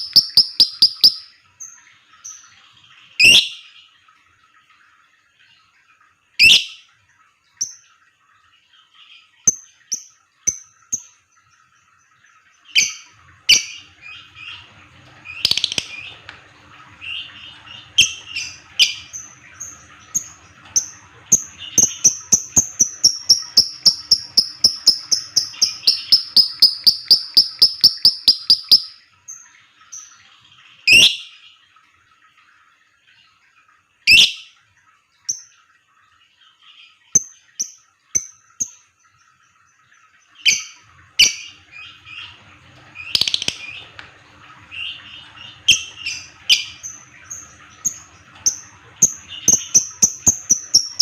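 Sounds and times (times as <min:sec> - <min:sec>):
lovebird rapid chattering trill: 0:00.0 - 0:01.3, 0:22.0 - 0:29.0
lovebird shrill chirps: 0:00.0 - 0:01.3, 0:22.9 - 0:29.0.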